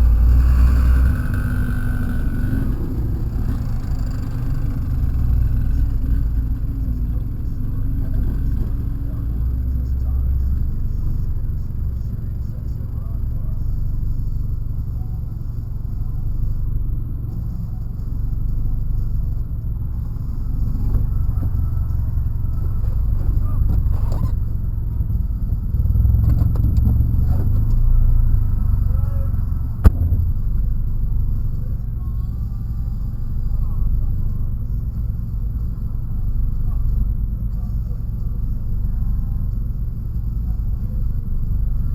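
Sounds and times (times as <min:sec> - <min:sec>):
vehicle engine rumbling: 0:00.0 - 0:41.9
sharp knock: 0:29.8 - 0:30.6.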